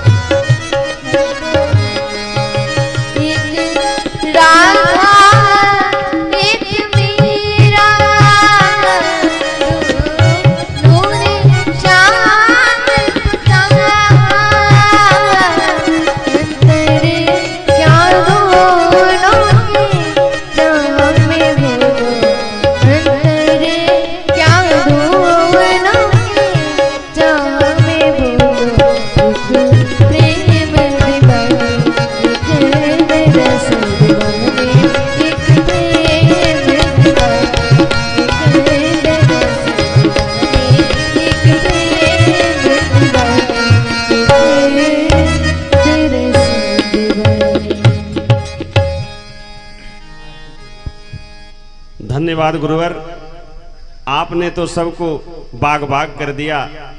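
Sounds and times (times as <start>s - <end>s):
tabla rhythm: 0.0s - 56.9s.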